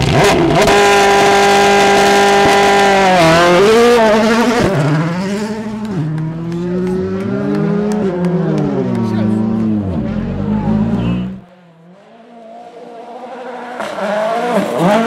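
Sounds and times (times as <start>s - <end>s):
rally car engine revving: 0.0s - 15.0s.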